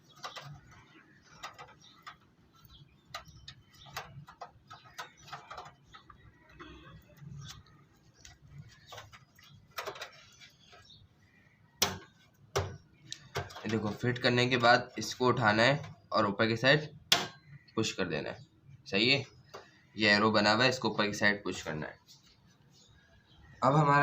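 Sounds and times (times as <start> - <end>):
computer parts clicking: 0.0 - 10.8.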